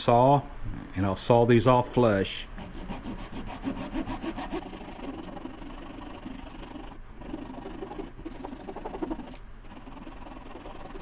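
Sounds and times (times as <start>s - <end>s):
hand saw rasping on hard wood: 2.6s - 6.2s.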